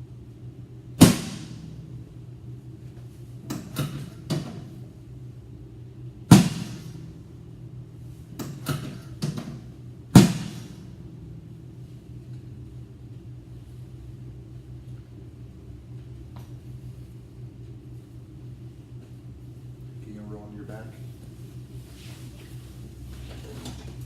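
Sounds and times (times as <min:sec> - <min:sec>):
steady low hum: 0:00.0 - 0:24.0
loud thud with ringing tail: 0:01.0 - 0:01.8, 0:06.3 - 0:07.0, 0:10.1 - 0:10.9.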